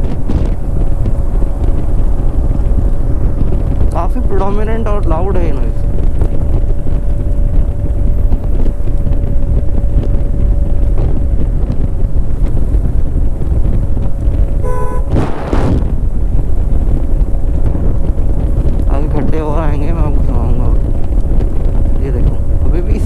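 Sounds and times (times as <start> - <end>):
road rumble: 0.0 - 23.0
wind buffeting: 0.0 - 23.0
electric motor whine: 5.9 - 19.3
vehicle horn toot: 14.6 - 15.5.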